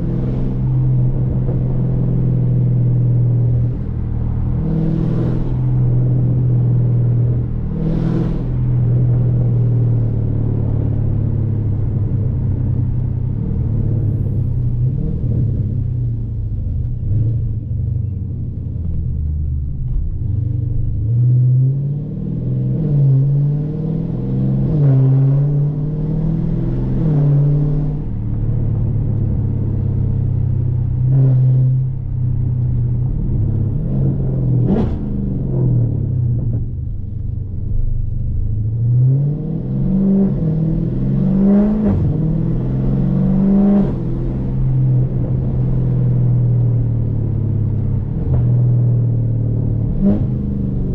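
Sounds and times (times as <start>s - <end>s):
car engine accelerating: 0.0s - 50.9s.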